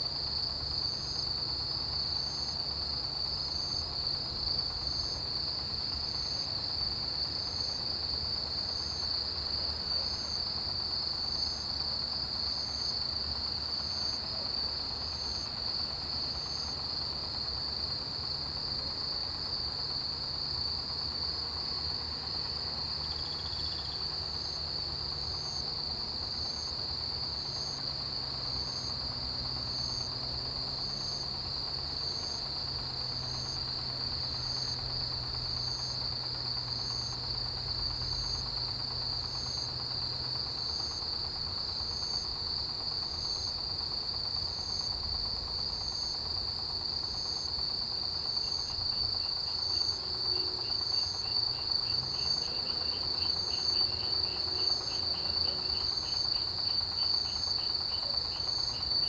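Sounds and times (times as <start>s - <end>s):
insect chirping: 0.0s - 59.0s
insects trilling: 0.0s - 59.0s.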